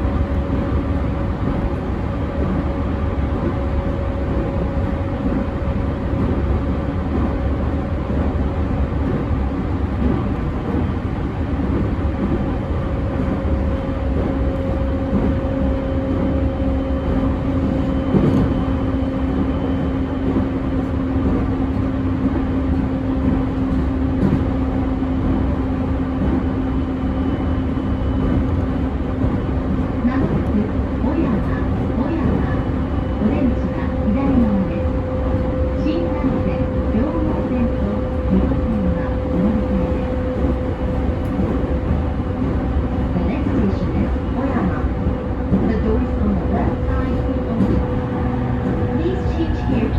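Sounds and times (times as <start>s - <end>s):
train wheels rumbling on rails: 0.0s - 49.9s
lower hum: 9.9s - 49.9s
traction motor hum: 11.8s - 49.9s.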